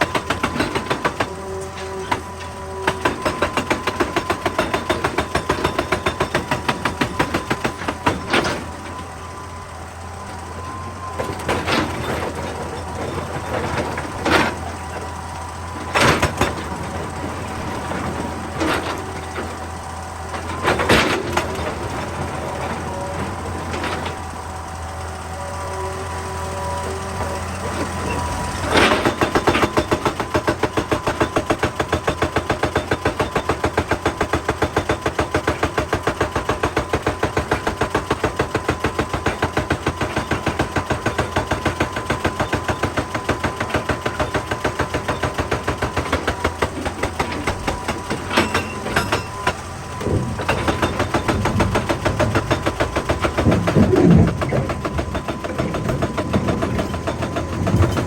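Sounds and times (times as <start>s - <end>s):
hydraulic breaker hammering rock: 0.0s - 25.9s, 26.5s - 58.0s
diesel engine running: 0.0s - 58.0s.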